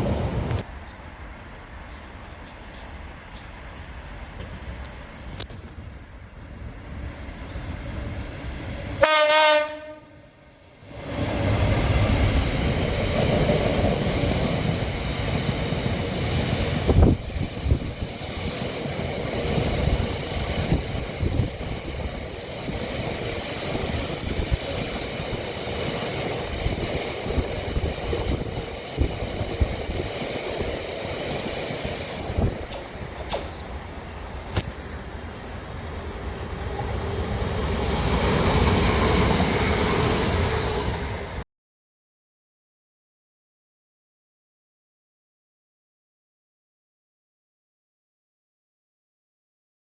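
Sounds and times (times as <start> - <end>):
train wheels rumbling on track: 0.0 - 10.2, 10.8 - 41.4
train horn blast: 9.0 - 10.6.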